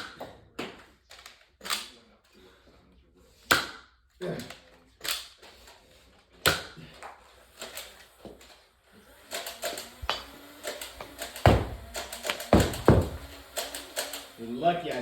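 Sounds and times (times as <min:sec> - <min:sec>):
toy blaster clicks: 0:07.6 - 0:08.6, 0:09.2 - 0:12.6, 0:13.3 - 0:15.0.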